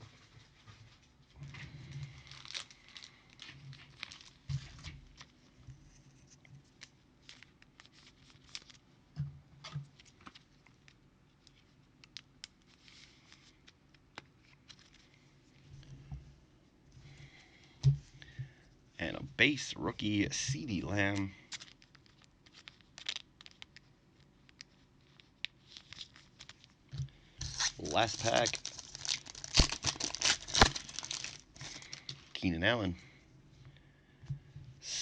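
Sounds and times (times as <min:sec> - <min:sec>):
wrapper crinkling and tearing: 0:02.1 - 0:05.5, 0:06.7 - 0:08.9, 0:10.0 - 0:15.2, 0:20.3 - 0:26.8, 0:27.4 - 0:32.4.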